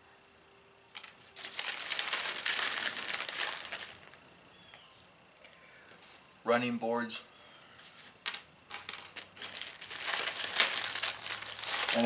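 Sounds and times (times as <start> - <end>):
crinkling and rustling: 1.0 - 6.0, 7.9 - 12.0.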